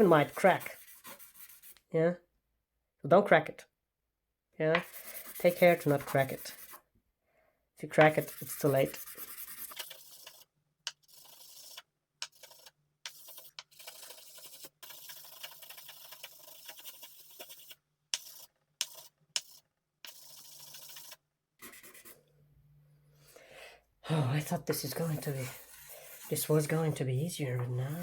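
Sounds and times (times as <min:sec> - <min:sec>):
sandpaper rasping on glass: 0:04.8 - 0:06.8.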